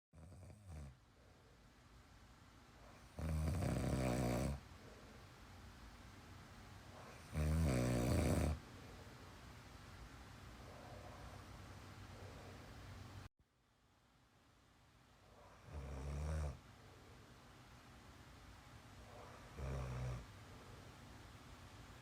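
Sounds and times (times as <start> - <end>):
man snoring: 0.2 - 1.0, 3.0 - 4.6, 7.1 - 8.6, 15.6 - 16.6, 19.5 - 20.3.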